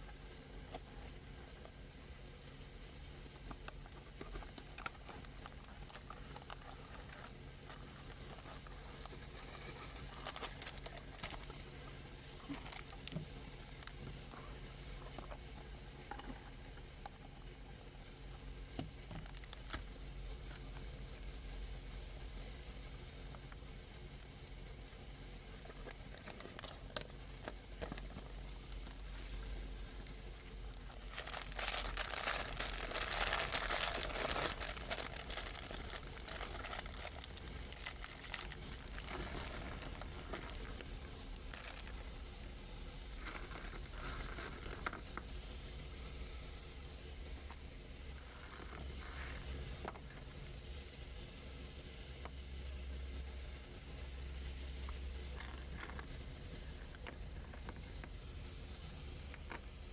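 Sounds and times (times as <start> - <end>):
packaging crinkling and tearing: 4.2 - 11.8, 12.4 - 13.2, 19.1 - 20.6, 25.4 - 42.2.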